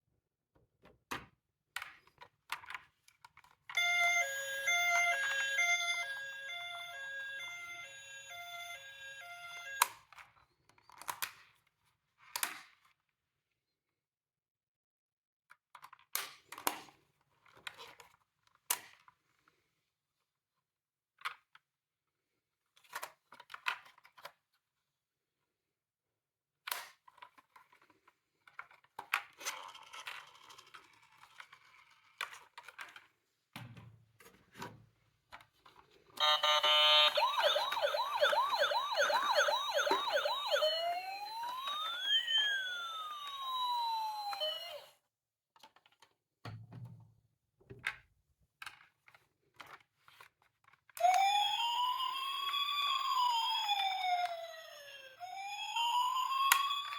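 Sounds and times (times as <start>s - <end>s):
toy electronic sirens: 3.8s - 10.0s, 36.2s - 45.0s, 51.0s - 56.9s.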